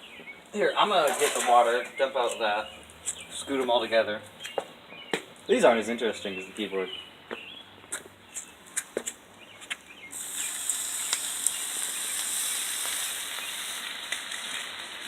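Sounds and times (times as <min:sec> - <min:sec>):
water hissing on hot parts: 0:00.7 - 0:02.4, 0:10.1 - 0:15.0.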